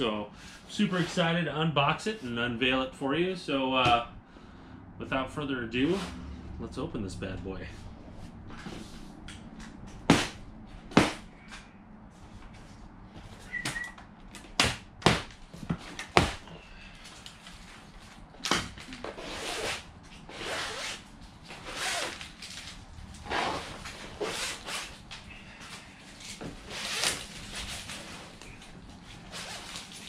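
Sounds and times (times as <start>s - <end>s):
cardboard rustling and scraping: 7.8s - 9.2s, 15.4s - 30.0s.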